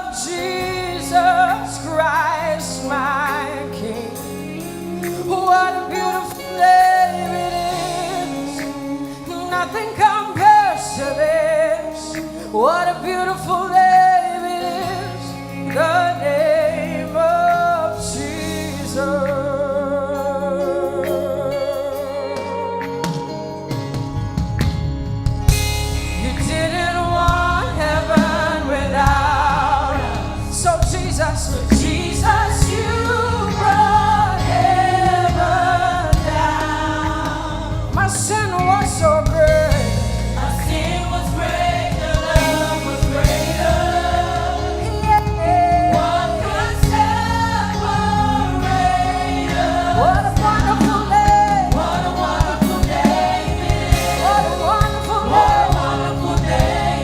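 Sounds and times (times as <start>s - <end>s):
choir backing vocals: 0.0s - 24.0s, 25.5s - 57.0s
band with bass and drums: 0.0s - 57.0s
people singing worship song: 0.0s - 57.0s.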